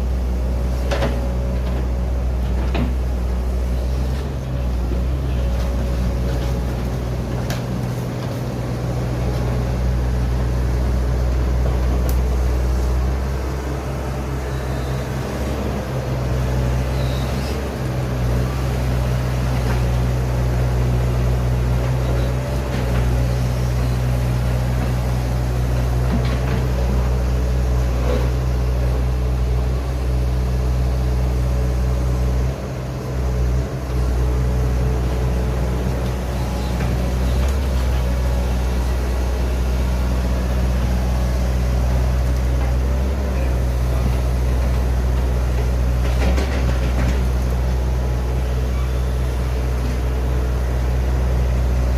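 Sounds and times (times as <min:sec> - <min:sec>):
excavator diesel engine running: 0:00.0 - 0:51.9.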